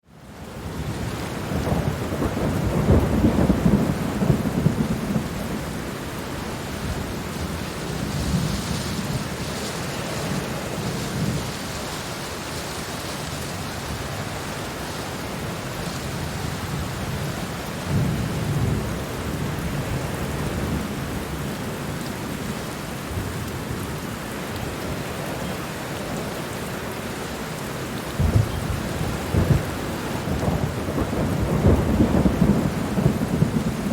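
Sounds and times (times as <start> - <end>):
heavy rain falling: 0.1 - 33.9
deep low thunder rumbles: 1.5 - 5.8, 28.2 - 33.9.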